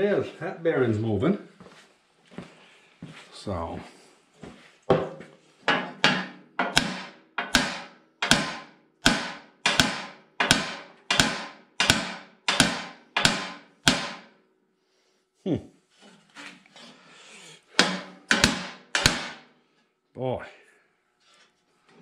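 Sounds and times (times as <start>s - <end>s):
hammer blows ringing on metal: 5.7s - 14.3s, 17.8s - 19.5s.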